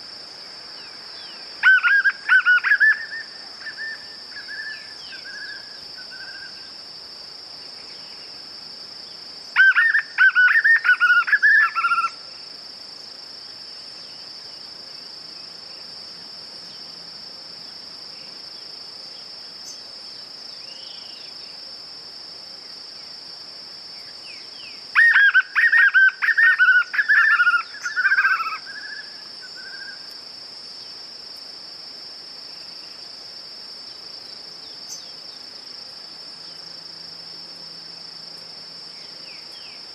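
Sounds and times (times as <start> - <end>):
high insect buzz: 0.0 - 39.9
bird singing: 0.8 - 6.8, 9.1 - 12.4, 18.1 - 21.6, 24.0 - 30.2, 38.9 - 39.9.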